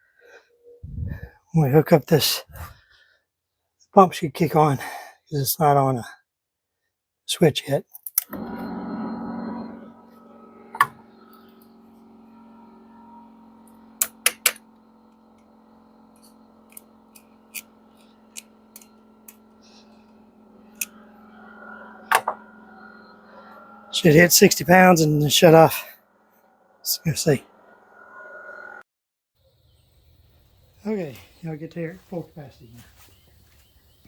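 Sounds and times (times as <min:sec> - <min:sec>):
electric air compressor running: 0:08.3 - 0:28.8.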